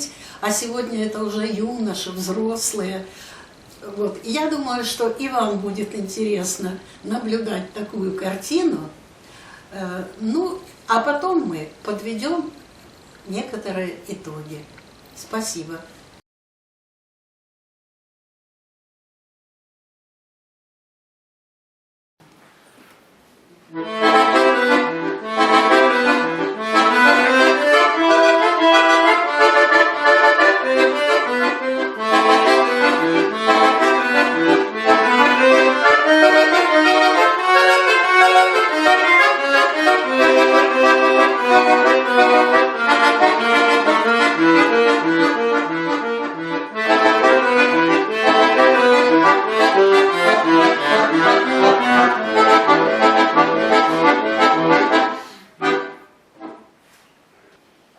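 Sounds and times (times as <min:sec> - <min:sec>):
button accordion music: 0:23.7 - 0:56.7.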